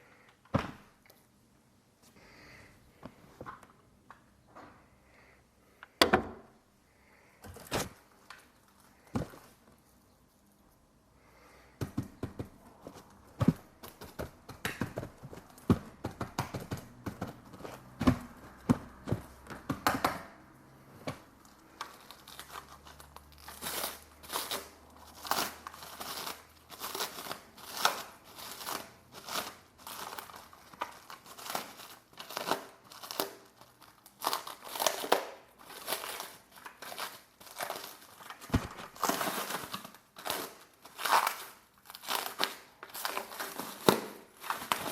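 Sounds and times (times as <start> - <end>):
plastic wrapping crinkling: 21.2 - 44.9.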